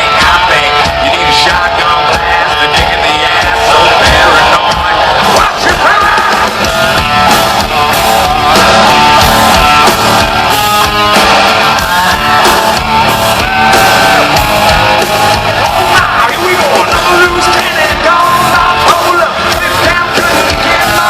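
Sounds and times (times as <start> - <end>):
person singing lead vocal: 0.0 - 6.7, 15.5 - 21.0
drums: 0.0 - 21.0
electric guitars: 0.0 - 21.0.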